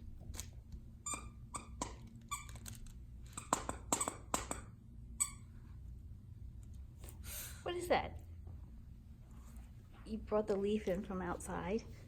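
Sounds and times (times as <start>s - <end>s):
squeaky dog toy: 1.0s - 5.5s.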